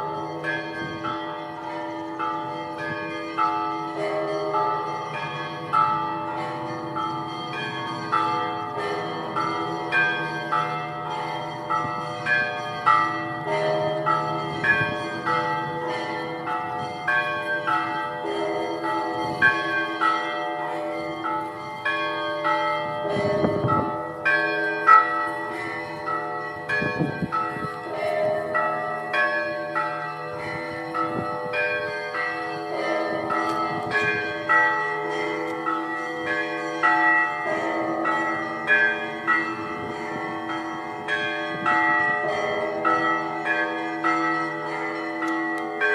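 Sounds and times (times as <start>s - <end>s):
deep bell: 0.0s - 45.9s
larger bells ringing: 0.0s - 45.9s
small bells ringing: 0.0s - 45.9s.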